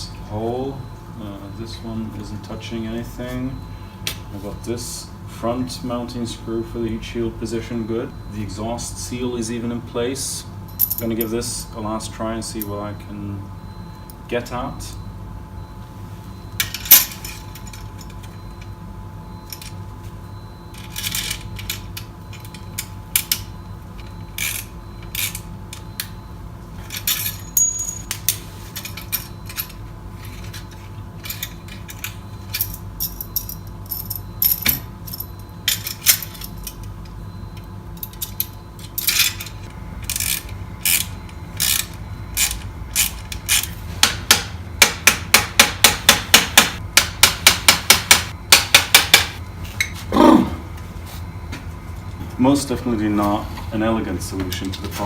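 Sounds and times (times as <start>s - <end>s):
metal tools clinking and knocking: 26.8s - 36.9s.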